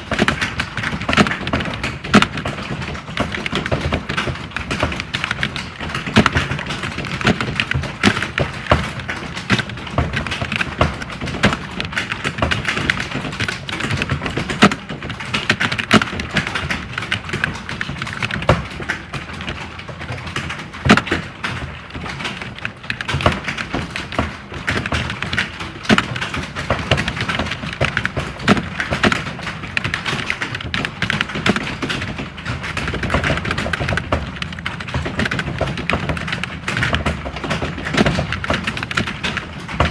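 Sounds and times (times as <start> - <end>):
many keyboards typing: 0.0 - 39.9.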